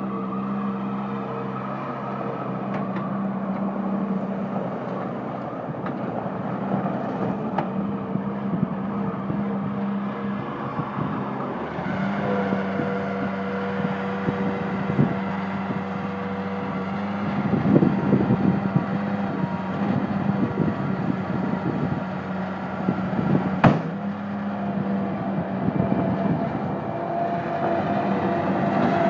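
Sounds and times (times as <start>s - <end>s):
diesel engine running: 0.0s - 29.0s
sharp knock: 23.6s - 23.9s.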